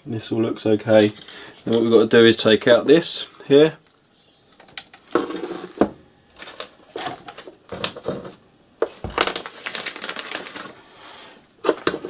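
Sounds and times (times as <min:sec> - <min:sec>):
metal parts and tools clinking: 0:00.9 - 0:01.9, 0:04.5 - 0:11.0.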